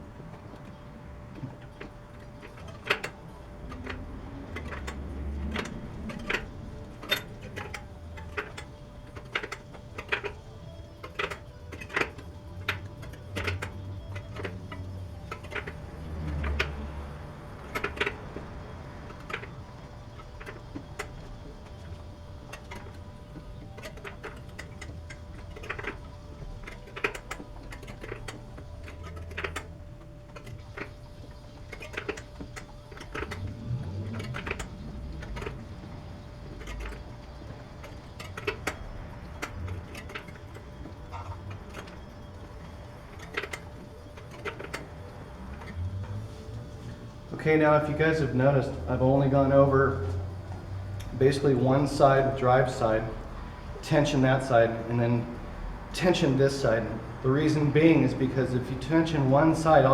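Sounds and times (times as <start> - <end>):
spoke wrench clicks and ticks: 1.3 - 21.9.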